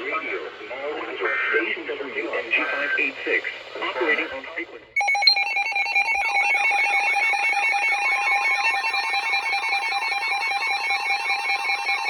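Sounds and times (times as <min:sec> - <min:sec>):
pulsing electronic alarm tones: 0:00.0 - 0:03.2, 0:05.0 - 0:12.0
warbling siren-like sweeps: 0:05.0 - 0:12.0.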